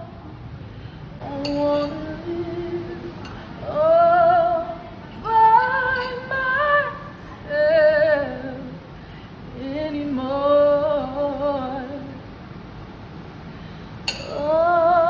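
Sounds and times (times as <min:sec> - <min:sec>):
woman singing unaccompanied: 0:01.2 - 0:08.9, 0:09.5 - 0:12.3, 0:14.2 - 0:15.0.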